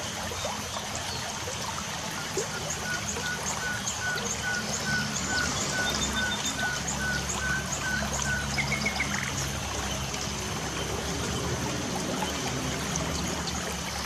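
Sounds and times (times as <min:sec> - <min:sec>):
birds chirping: 0:02.2 - 0:11.6.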